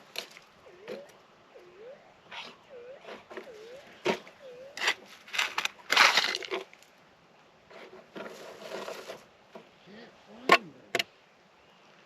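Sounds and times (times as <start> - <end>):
metal detector warble tone: 0.6 - 5.1
pick digging into rocky dirt: 3.0 - 6.8.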